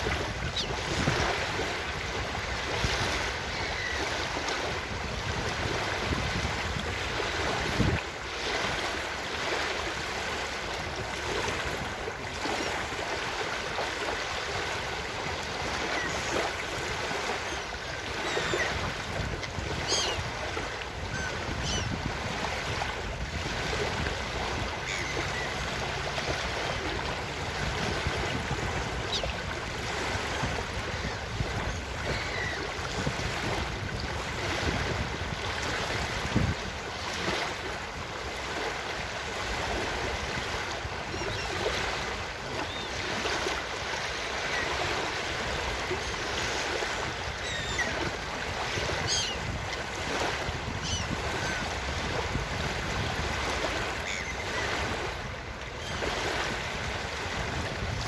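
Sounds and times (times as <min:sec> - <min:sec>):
ocean surf on beach: 0:00.0 - 0:58.0
faint seagull calls: 0:03.5 - 0:04.2, 0:17.4 - 0:18.8, 0:19.8 - 0:20.3, 0:21.0 - 0:22.0, 0:24.8 - 0:25.7, 0:30.9 - 0:32.7, 0:47.3 - 0:48.2, 0:48.9 - 0:49.6, 0:50.7 - 0:51.6, 0:54.0 - 0:54.8, 0:55.8 - 0:56.2.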